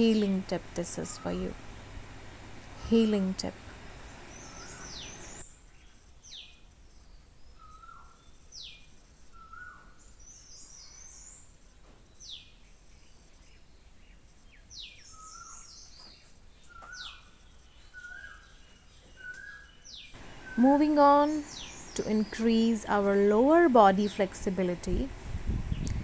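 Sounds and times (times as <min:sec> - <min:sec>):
birds chirping and whistling: 0:04.0 - 0:05.4, 0:09.4 - 0:11.4, 0:14.6 - 0:24.4.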